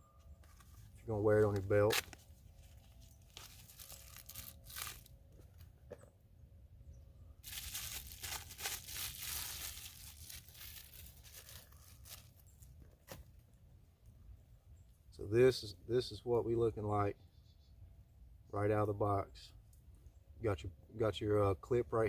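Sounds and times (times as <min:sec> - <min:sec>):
nylon sheath rustling: 0:00.4 - 0:05.7, 0:07.4 - 0:12.6.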